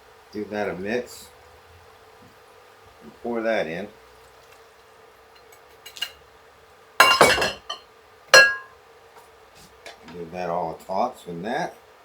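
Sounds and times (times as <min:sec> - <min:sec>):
kitchenware clinking on frying pan: 0:07.0 - 0:08.8.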